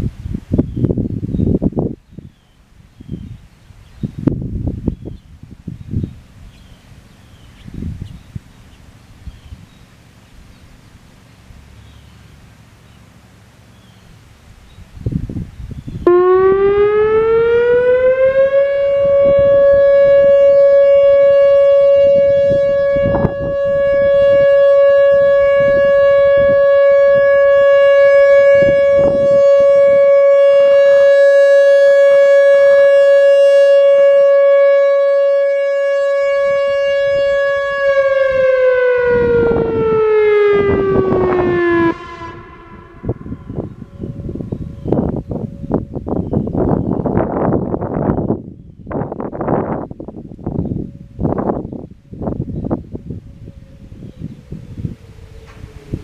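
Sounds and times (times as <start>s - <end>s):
electronic warning siren: 15.9s - 48.4s, 49.0s - 56.0s.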